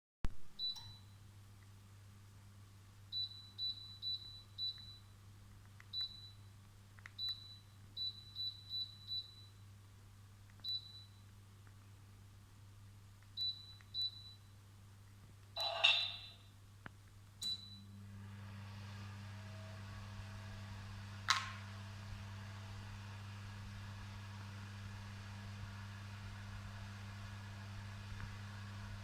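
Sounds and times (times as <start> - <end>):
high electronic beeps: 15.6 - 16.4.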